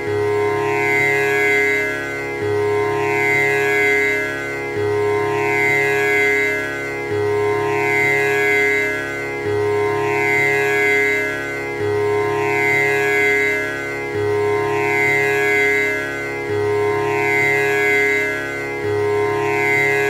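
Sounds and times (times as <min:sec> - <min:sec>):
tanpura drone: 0:00.0 - 0:20.0.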